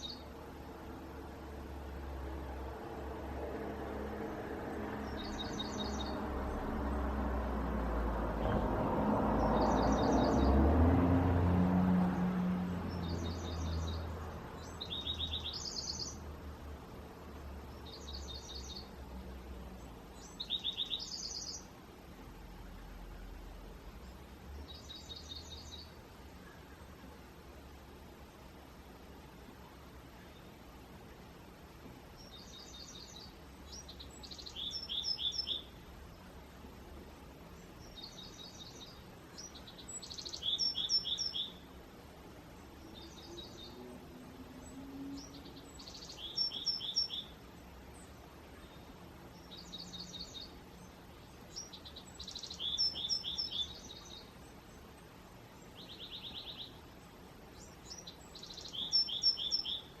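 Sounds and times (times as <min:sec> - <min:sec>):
songbird singing trilled song: 0:00.0 - 0:00.4, 0:05.0 - 0:07.1, 0:08.4 - 0:10.6, 0:12.1 - 0:16.3, 0:17.6 - 0:19.1, 0:19.8 - 0:21.8, 0:22.9 - 0:27.0, 0:32.1 - 0:36.3, 0:37.5 - 0:41.8, 0:42.5 - 1:00.0
steady outdoor hiss: 0:00.0 - 1:00.0.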